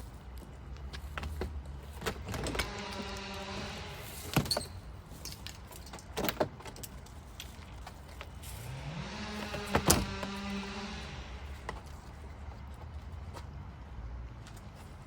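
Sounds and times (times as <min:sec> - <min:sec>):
power tool motor running: 0:02.4 - 0:04.4, 0:08.6 - 0:11.6.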